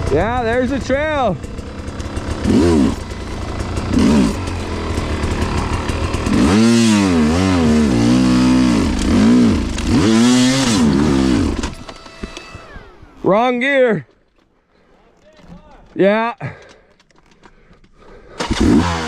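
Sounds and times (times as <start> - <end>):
dirt bike engine revving: 0.0 - 13.3, 18.4 - 19.0.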